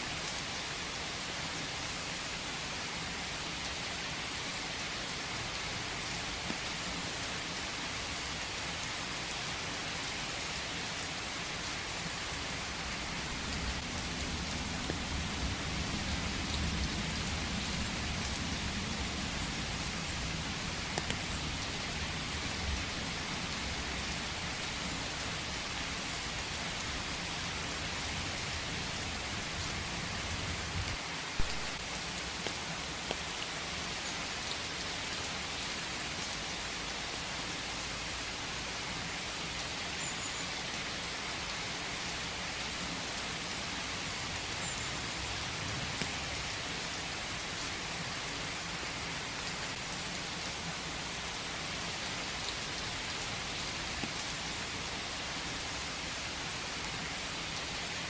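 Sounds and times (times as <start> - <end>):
steady rain falling: 0.0 - 58.0
raindrops ticking: 13.0 - 22.9, 31.4 - 33.8.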